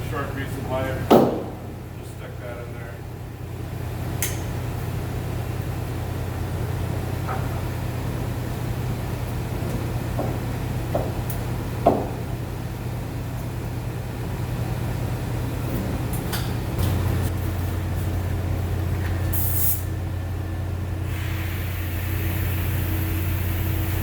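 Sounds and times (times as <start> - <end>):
short hiss of air: 19.3 - 19.9, 21.0 - 24.0.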